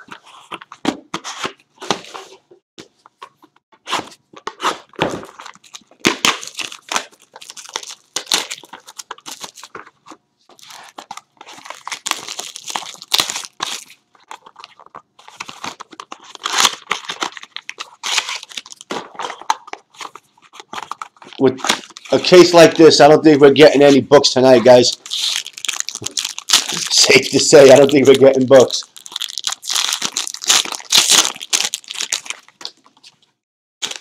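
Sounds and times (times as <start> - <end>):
cardboard crunching: 3.3 - 22.3, 24.5 - 33.1
plastic wrap tearing and crinkling: 4.8 - 9.9, 10.5 - 22.7, 24.7 - 33.2.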